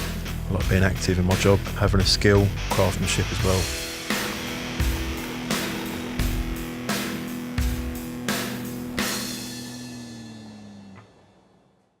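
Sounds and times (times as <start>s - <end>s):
background music final chord: 3.2s - 11.1s.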